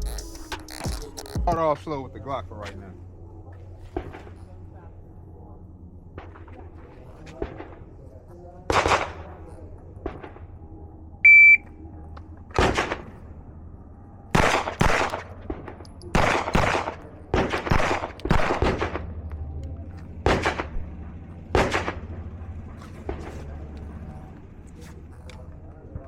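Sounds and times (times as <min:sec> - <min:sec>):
pistol shots: 0:08.7 - 0:09.4, 0:12.5 - 0:13.3, 0:14.3 - 0:19.2, 0:20.2 - 0:22.2
shot timer beep: 0:11.2 - 0:11.6.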